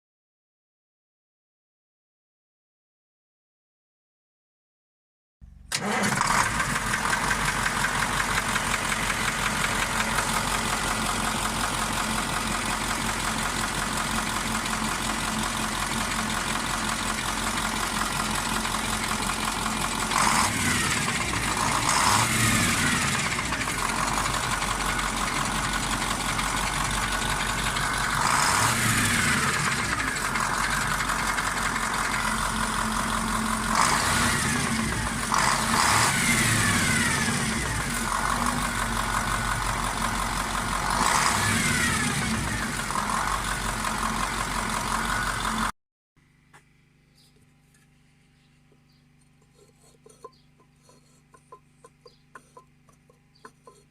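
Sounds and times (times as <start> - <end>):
diesel engine revving: 5.7 - 45.7
diesel engine idling with a knock: 6.7 - 36.0, 48.7 - 53.9.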